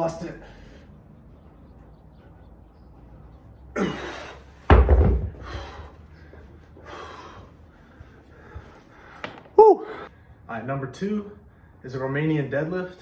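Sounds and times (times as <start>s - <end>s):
hard breathing: 0.3s - 1.1s, 5.4s - 10.5s
dumbbell thud on floor: 4.7s - 5.5s.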